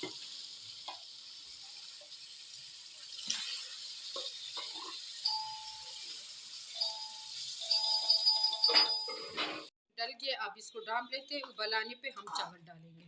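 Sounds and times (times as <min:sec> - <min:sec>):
water hissing in hot oil: 0:00.0 - 0:08.0.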